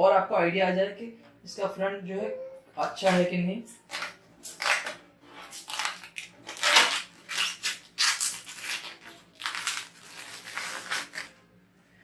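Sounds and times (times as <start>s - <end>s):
plastic wrapper crinkling: 2.8s - 11.4s.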